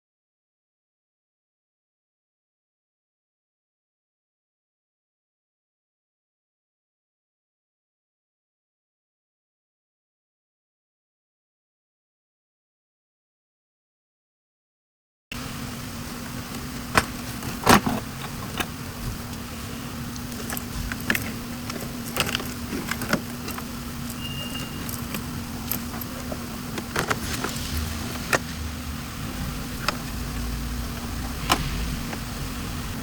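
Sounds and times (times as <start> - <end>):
steady low hum: 15.3 - 33.0
hand tools clicking and clinking: 16.5 - 28.4.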